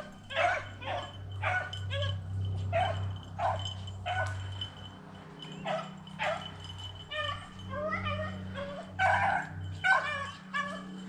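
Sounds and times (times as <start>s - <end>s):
dogs baying and barking: 0.0s - 11.0s
steady low hum: 0.0s - 11.0s.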